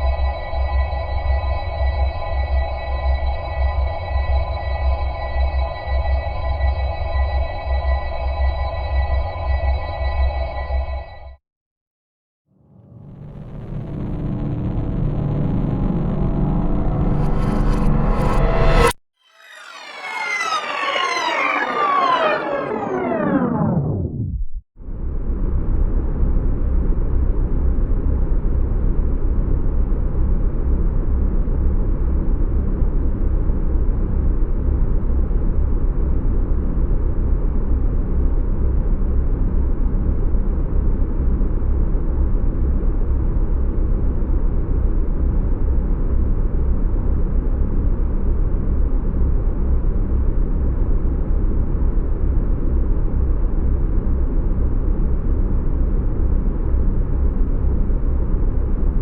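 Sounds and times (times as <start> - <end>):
low rumble: 12.6 - 19.0, 21.9 - 59.0.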